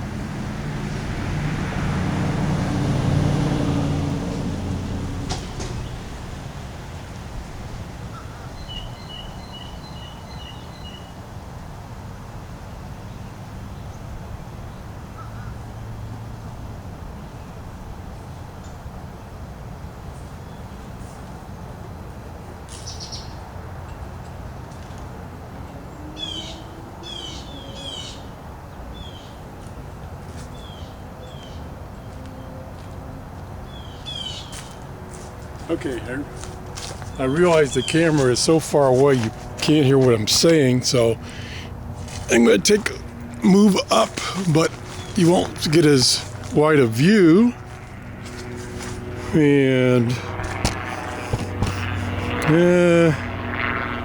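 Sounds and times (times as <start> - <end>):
songbird chirping: 37.0 - 47.7.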